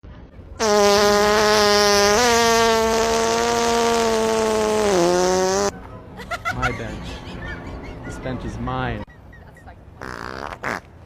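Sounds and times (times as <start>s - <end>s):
buzzy fart sound: 0.6s - 5.7s, 10.0s - 10.9s.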